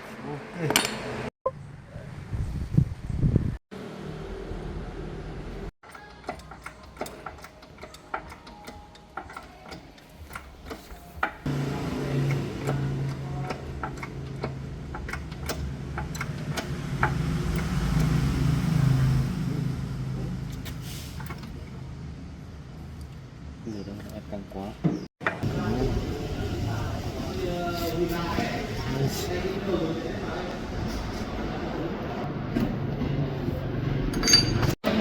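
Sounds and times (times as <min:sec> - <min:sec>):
tools clicking and tapping: 0:05.8 - 0:11.5, 0:12.3 - 0:18.2.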